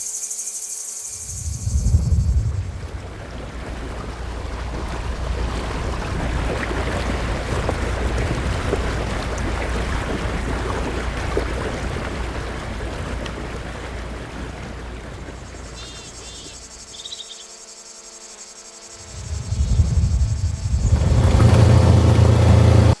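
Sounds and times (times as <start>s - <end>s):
loud low rumble: 1.2s - 5.9s, 19.1s - 23.0s
rushing noise with low rumble: 1.2s - 9.2s, 19.1s - 23.0s.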